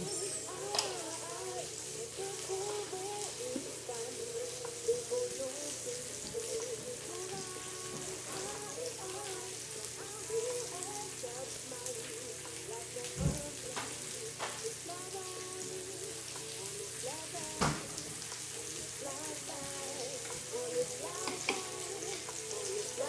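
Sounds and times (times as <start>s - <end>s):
food sizzling in frying pan: 0.0s - 23.0s.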